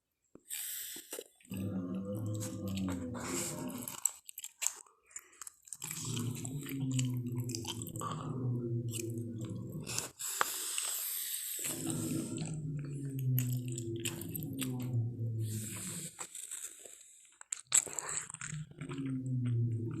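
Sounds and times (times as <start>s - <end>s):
low creature growl: 1.5s - 4.0s, 5.8s - 10.2s, 11.6s - 16.2s, 18.1s - 20.0s
breathy hiss: 8.9s - 16.2s.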